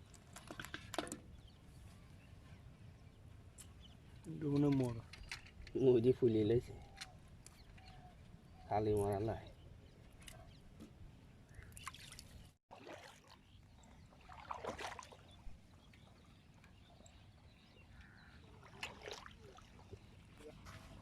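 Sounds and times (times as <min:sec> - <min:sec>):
water sloshing: 0:11.6 - 0:17.3, 0:17.9 - 0:21.0
water splashes: 0:11.7 - 0:16.2, 0:18.3 - 0:21.0.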